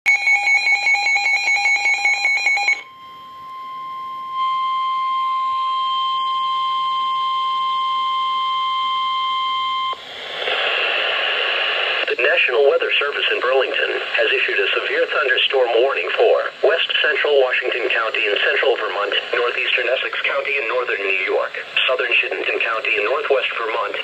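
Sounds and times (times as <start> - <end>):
steady warning alarm tone: 0.1 - 10.0
receiver hiss: 2.8 - 24.0.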